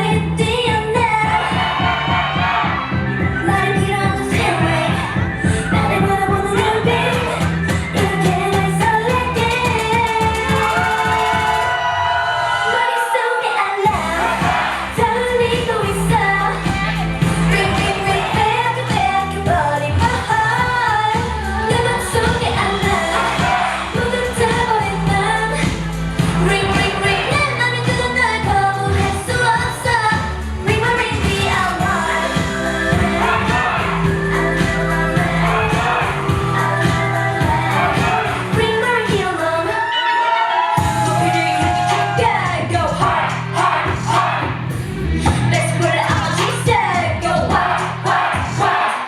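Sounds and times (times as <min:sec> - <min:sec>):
women singing: 0:00.0 - 0:11.4, 0:12.5 - 0:44.5, 0:45.3 - 0:49.0
electronic beat: 0:00.1 - 0:11.8, 0:13.9 - 0:39.6.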